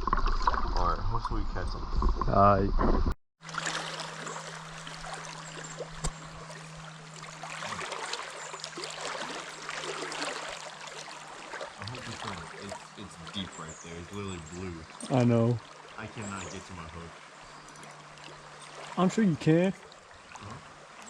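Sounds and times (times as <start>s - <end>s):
low hum: 0.0s - 20.8s
river water rushing: 3.4s - 13.7s, 14.4s - 21.0s.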